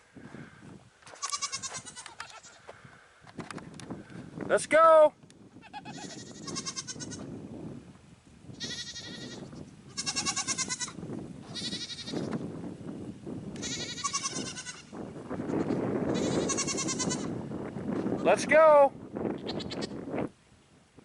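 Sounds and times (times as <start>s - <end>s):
goats bleating: 1.1s - 2.7s, 5.6s - 7.3s, 8.6s - 12.3s, 13.6s - 14.9s, 15.6s - 17.3s.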